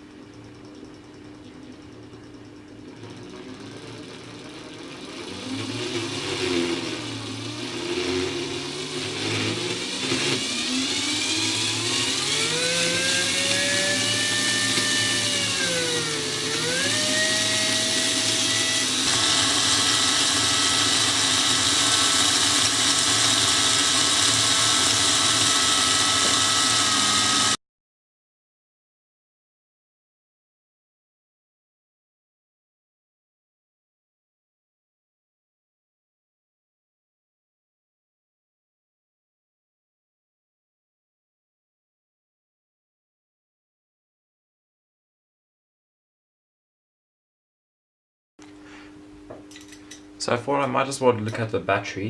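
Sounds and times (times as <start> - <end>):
electric motor whining: 2.9 - 27.6.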